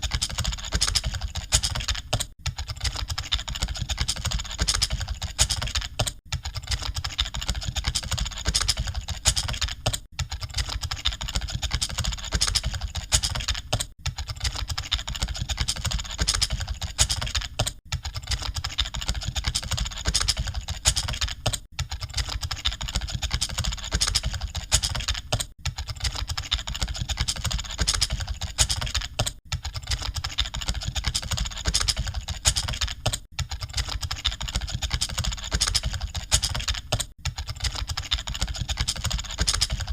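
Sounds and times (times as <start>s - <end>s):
fast keyboard typing: 0.0s - 39.9s.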